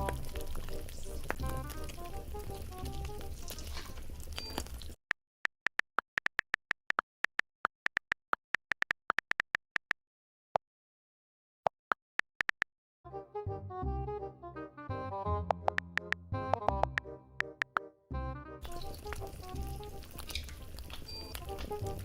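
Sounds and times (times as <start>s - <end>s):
keyboard music: 0.0s - 3.9s, 13.1s - 20.2s, 21.2s - 22.0s
quiet background music: 0.0s - 4.6s, 13.1s - 22.0s
food sizzling: 0.0s - 5.0s, 18.6s - 22.0s.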